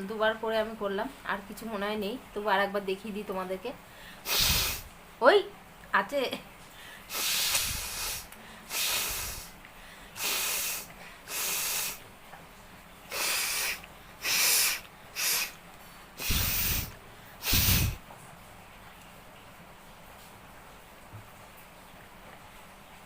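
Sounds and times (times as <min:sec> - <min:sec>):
person blowing nose: 0:04.2 - 0:04.9, 0:07.1 - 0:09.6, 0:10.2 - 0:12.0, 0:13.1 - 0:15.6, 0:16.2 - 0:18.0.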